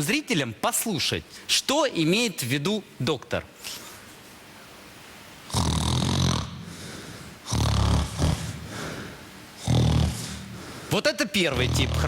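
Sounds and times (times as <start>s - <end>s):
person snoring: 5.5s - 6.5s, 7.4s - 8.6s, 9.6s - 10.5s, 11.6s - 12.0s.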